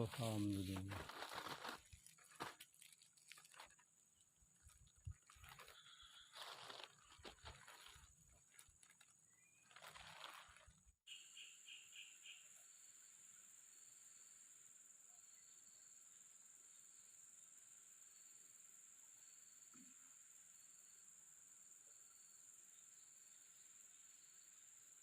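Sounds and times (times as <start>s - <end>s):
soft rustles: 0.0s - 3.8s
insect chirps: 0.0s - 25.0s.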